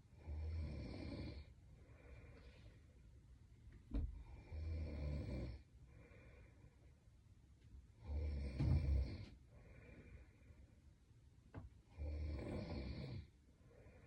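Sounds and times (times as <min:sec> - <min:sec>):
quiet breathing: 0:00.0 - 0:14.0
woman snoring: 0:00.2 - 0:01.5, 0:04.2 - 0:05.6, 0:08.0 - 0:09.4, 0:11.9 - 0:13.3.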